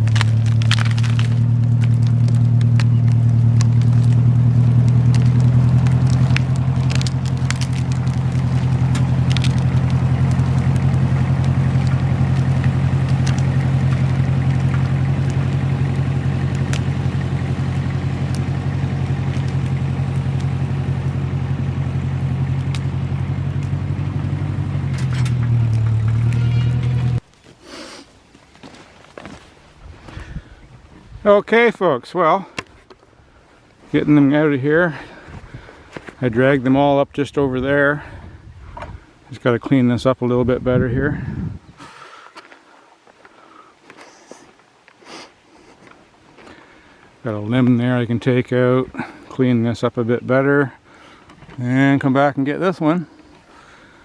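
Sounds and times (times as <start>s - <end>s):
tractor engine running under load: 0.0s - 27.5s
cracks and clicks: 0.0s - 30.2s.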